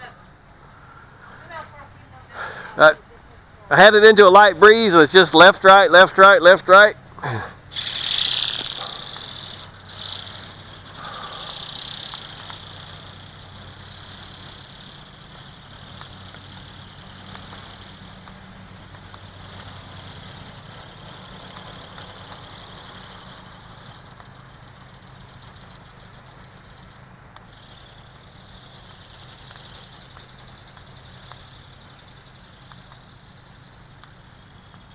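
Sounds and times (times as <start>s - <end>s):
small electric motor buzzing: 7.6s - 34.9s.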